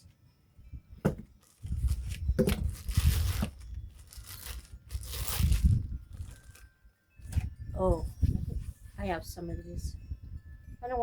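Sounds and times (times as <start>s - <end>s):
packaging torn and crinkled: 1.4s - 6.7s.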